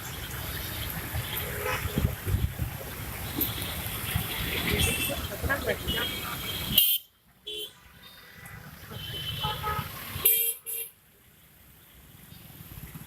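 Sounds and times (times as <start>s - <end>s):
steady traffic: 0.0s - 13.0s
vehicle horns honking: 1.4s - 2.1s, 4.6s - 8.2s, 9.0s - 10.9s.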